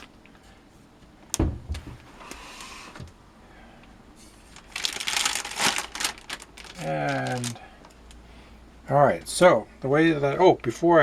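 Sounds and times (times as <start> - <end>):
knock on packaging: 1.4 - 1.9.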